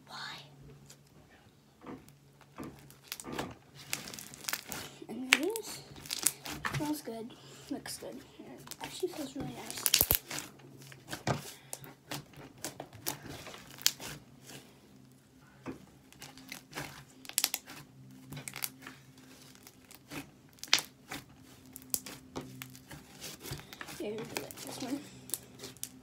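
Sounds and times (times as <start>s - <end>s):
slime clicking and crackling: 2.5s - 7.0s, 8.6s - 14.6s, 16.0s - 26.0s.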